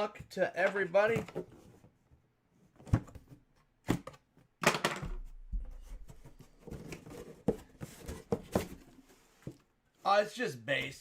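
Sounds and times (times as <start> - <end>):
cardboard box clicks and knocks: 5.0 - 9.6
cardboard rustling: 5.2 - 9.7.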